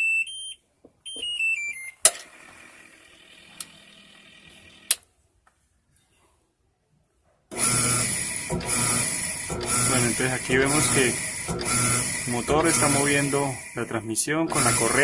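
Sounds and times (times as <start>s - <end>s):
washing machine beeping tune: 0.0s - 2.0s, 7.6s - 15.0s.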